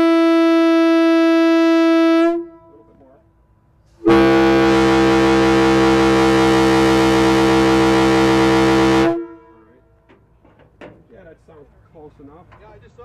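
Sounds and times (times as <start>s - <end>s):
locomotive air horn chord: 0.0s - 2.8s, 4.0s - 10.0s.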